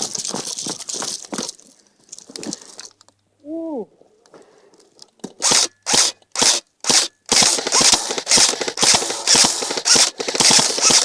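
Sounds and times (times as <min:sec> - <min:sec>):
airsoft guns firing: 0:05.4 - 0:11.0.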